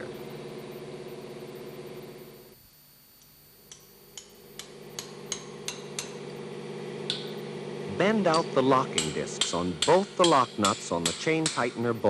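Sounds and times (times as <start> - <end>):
engine turning gear humming: 4.6 - 12.0.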